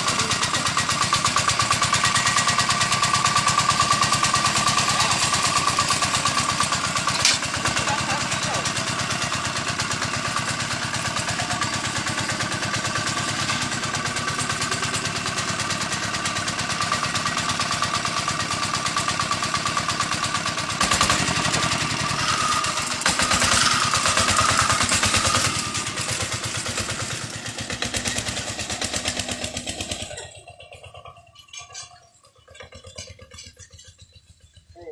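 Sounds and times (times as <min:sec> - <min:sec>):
diesel engine running: 0:00.0 - 0:34.9.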